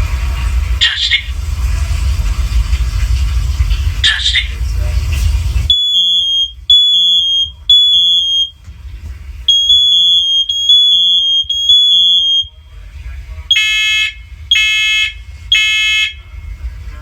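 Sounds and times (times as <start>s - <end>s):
smoke alarm beeping: 5.7s - 8.6s, 9.5s - 12.6s, 13.5s - 16.2s.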